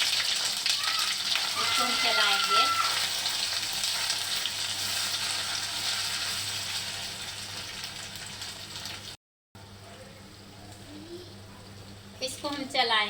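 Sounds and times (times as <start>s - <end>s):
paste sizzling in hot oil: 0.0s - 9.2s.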